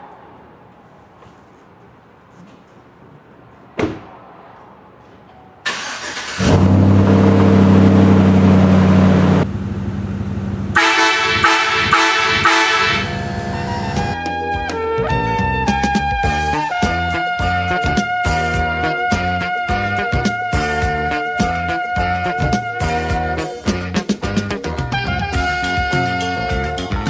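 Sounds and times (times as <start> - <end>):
air horn chord: 10.8 - 23.6, 25.0 - 27.0
music with brass: 10.8 - 27.0.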